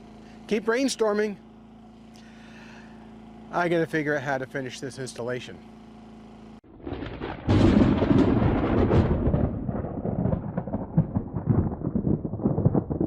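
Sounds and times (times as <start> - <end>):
thunder rumble with crackling: 6.7 - 13.0.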